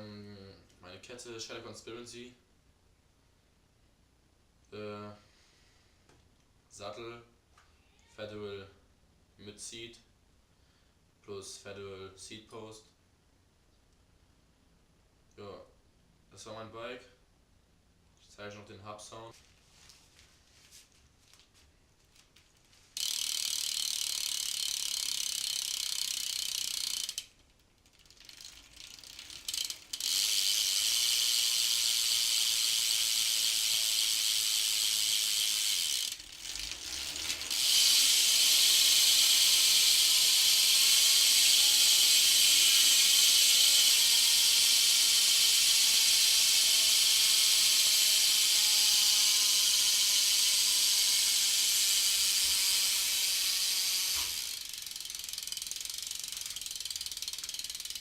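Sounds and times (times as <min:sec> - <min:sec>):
bike freewheel ratchet clicking: 0:22.9 - 0:58.0.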